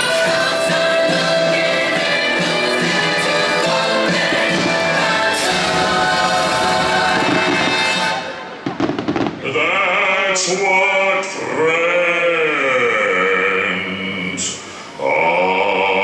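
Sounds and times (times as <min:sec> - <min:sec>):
person singing long notes: 0:00.0 - 0:08.7, 0:11.2 - 0:16.0
soundtrack music: 0:00.0 - 0:09.2
firework bangs and crackles: 0:02.5 - 0:09.8.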